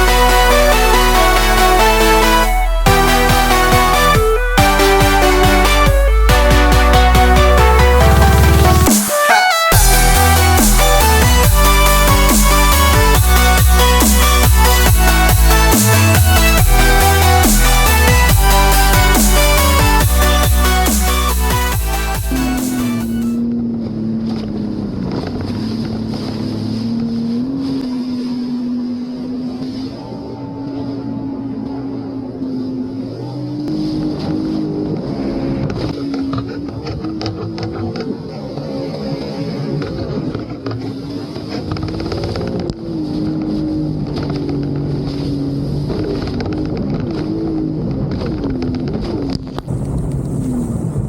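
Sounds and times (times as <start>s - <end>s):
jet ski engine: 0.0s - 51.0s
wind: 23.4s - 51.0s.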